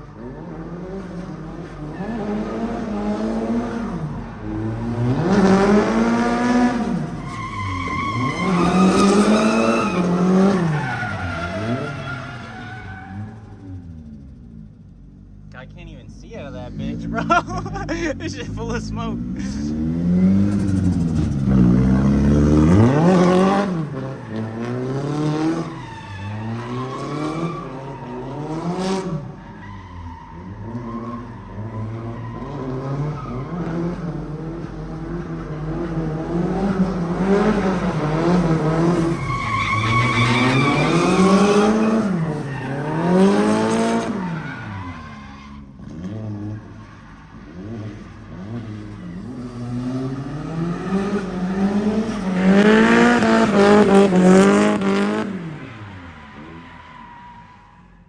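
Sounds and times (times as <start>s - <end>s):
car engine revving: 0.2s - 57.2s
tyres squealing: 39.1s - 43.2s.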